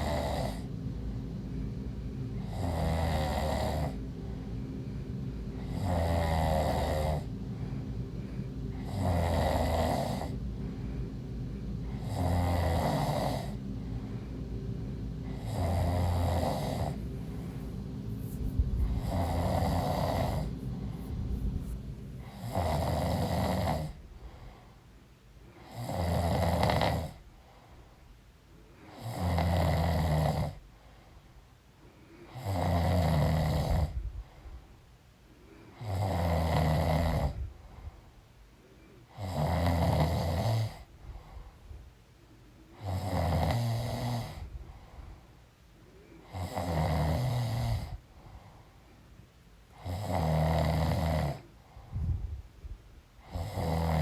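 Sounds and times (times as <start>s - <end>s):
woman snoring: 0.0s - 0.7s, 2.4s - 4.1s, 5.6s - 7.3s, 8.4s - 10.4s, 11.8s - 13.6s, 15.2s - 24.0s, 25.6s - 27.2s, 28.9s - 30.6s, 32.3s - 34.0s, 35.7s - 37.4s, 39.1s - 40.9s, 42.8s - 44.5s, 46.2s - 48.0s, 49.8s - 51.5s, 53.2s - 54.0s
steady low hum: 0.0s - 54.0s.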